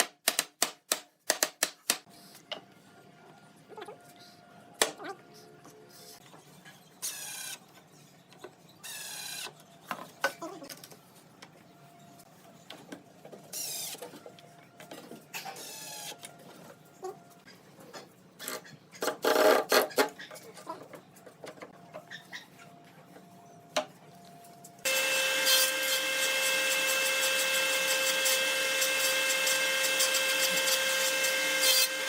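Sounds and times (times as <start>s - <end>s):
power tool motor whining: 24.9s - 32.0s.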